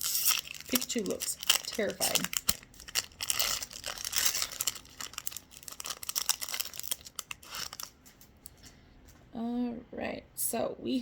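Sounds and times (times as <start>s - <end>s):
wrapper crinkling and tearing: 0.0s - 8.0s.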